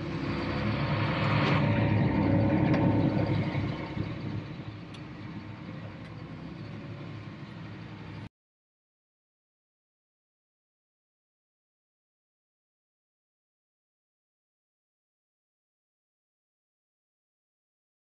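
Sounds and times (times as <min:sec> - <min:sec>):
diesel engine droning: 0:00.0 - 0:08.3.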